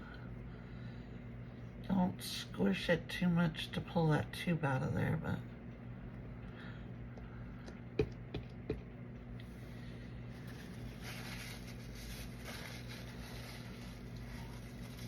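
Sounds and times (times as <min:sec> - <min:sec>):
steady low hum: 0:00.0 - 0:15.0
silicone rubbing and squishing: 0:10.3 - 0:15.0.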